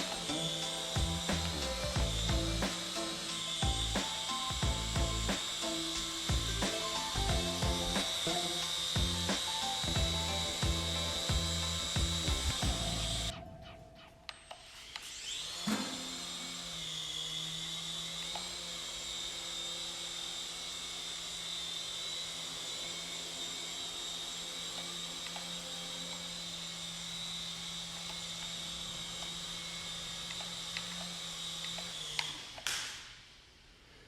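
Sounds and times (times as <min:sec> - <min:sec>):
toy helicopter motors whining: 0:00.0 - 0:13.3, 0:14.4 - 0:33.3
low hum: 0:00.0 - 0:14.6.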